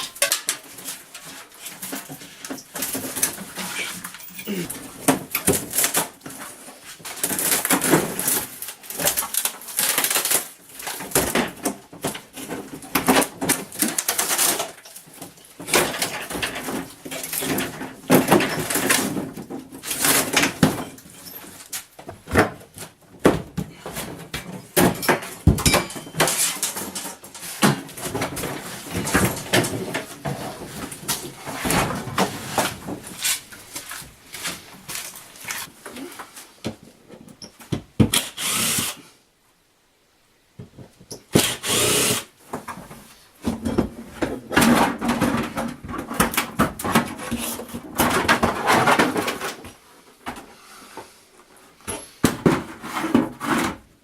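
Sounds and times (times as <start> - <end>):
demolition knocking and scraping: 10.8 - 35.8, 42.6 - 49.8, 52.2 - 54.0.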